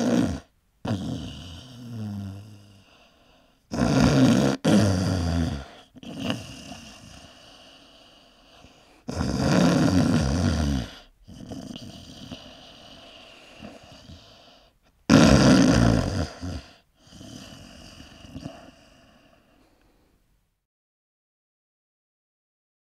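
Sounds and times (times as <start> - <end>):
man snoring: 0.0 - 3.1, 3.7 - 19.4
quiet breathing: 1.2 - 3.7, 5.5 - 9.1, 10.8 - 15.1, 16.2 - 20.4.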